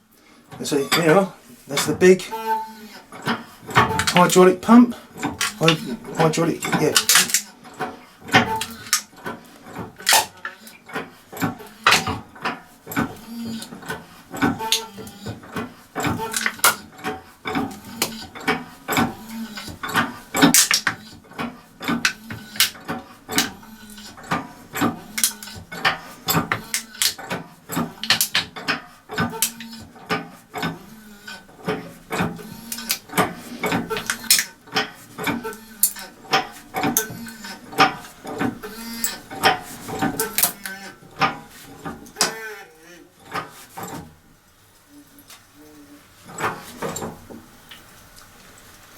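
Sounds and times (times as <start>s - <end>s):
hydraulic pump lever clanking: 0.5s - 42.4s.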